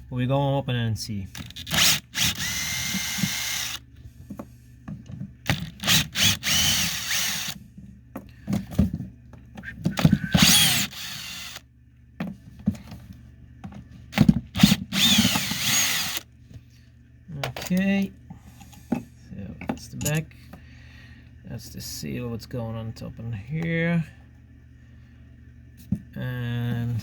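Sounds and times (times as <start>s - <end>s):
power drill motor whine: 1.4s - 3.9s, 5.5s - 7.6s, 9.9s - 11.6s, 14.2s - 16.2s.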